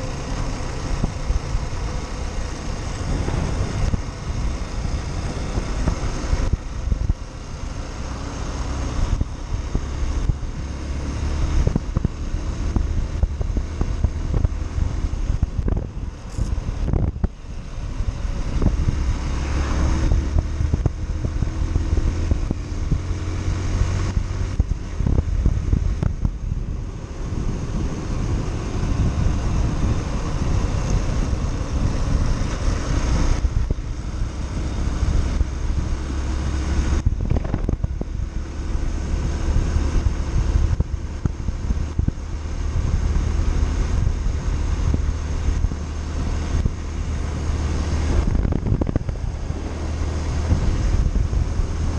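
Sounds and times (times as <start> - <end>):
motorcycle engine running: 0.0 - 51.9
wind noise on microphone: 0.0 - 51.9.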